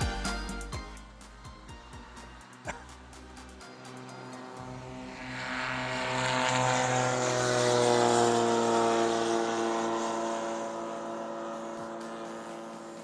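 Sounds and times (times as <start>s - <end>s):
propeller aircraft flying past: 1.5s - 13.0s.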